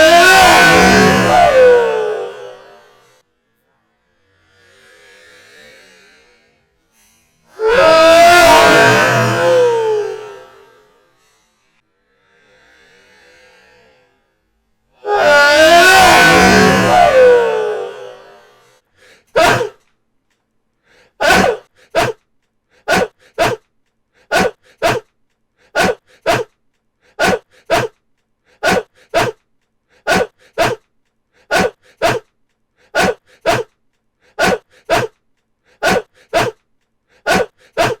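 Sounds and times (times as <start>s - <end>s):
person sneezing: 19.4s - 19.7s, 21.2s - 22.2s, 22.9s - 23.6s, 24.3s - 25.0s, 25.8s - 26.5s, 27.2s - 27.9s, 28.6s - 29.4s, 30.1s - 30.8s, 31.5s - 32.2s, 33.0s - 33.7s, 34.4s - 35.1s, 35.8s - 36.6s, 37.3s - 38.0s.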